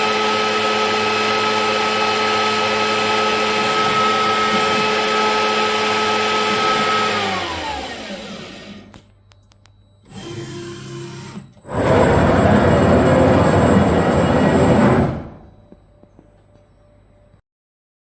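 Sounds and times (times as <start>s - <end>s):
spindle motor whine: 0.0s - 17.4s
low hum: 11.7s - 16.2s.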